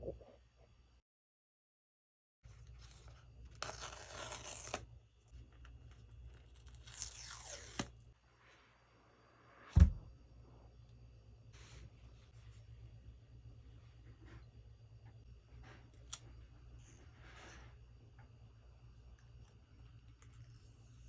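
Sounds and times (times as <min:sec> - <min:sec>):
paper tearing: 0:02.7 - 0:04.9, 0:06.3 - 0:08.0
loud thump: 0:09.7 - 0:10.1.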